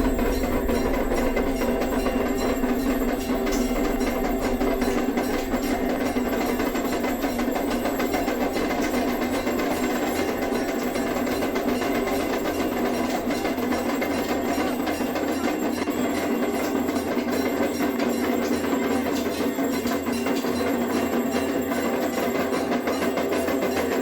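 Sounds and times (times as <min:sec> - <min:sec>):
hand drum rattle: 0:00.0 - 0:18.1
conch shell tone: 0:00.0 - 0:23.9.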